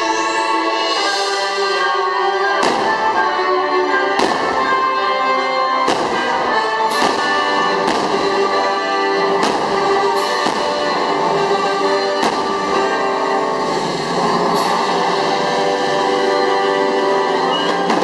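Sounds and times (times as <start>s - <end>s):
orchestral music: 0.0s - 18.0s
fireworks bangs: 2.6s - 14.9s, 17.5s - 18.0s.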